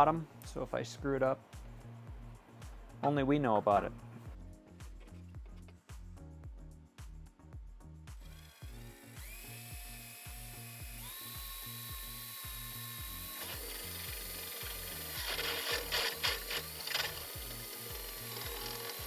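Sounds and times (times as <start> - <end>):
music with bass beat: 0.0 - 19.0
drill bit cutting fiberglass: 8.2 - 19.0
power drill motor whine: 8.2 - 19.0.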